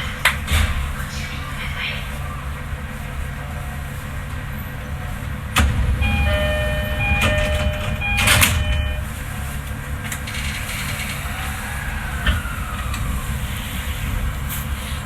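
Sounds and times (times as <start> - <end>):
air hissing from doors: 4.0 - 15.0
train door clunk: 5.3 - 9.3
electronic door chime: 6.0 - 9.1.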